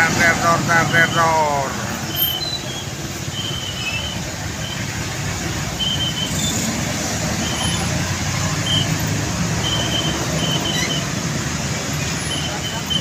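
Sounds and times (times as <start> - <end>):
truck diesel engine running: 0.0 - 9.7
road traffic: 0.0 - 13.0.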